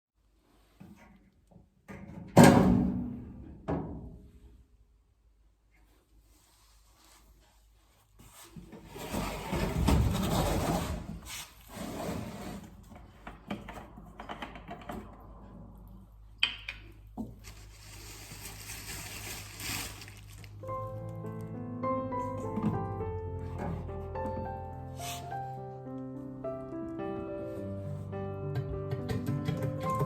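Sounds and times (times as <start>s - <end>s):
rubbing noises: 23.4s - 25.6s.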